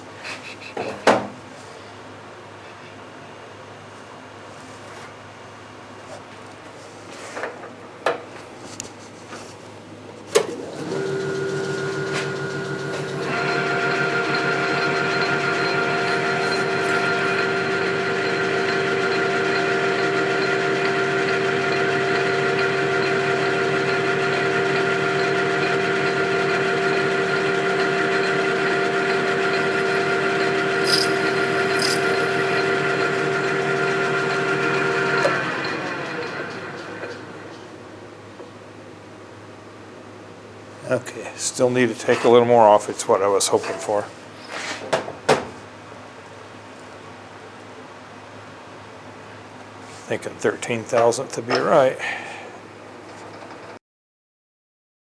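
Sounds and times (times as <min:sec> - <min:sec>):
metal lathe whining: 0:10.5 - 0:37.9.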